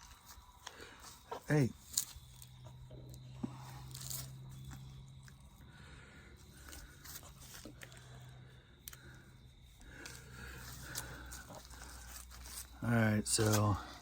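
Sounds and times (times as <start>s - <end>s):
steady low hum: 0.0s - 14.0s
hands clicking and scraping on wiring: 9.8s - 14.0s.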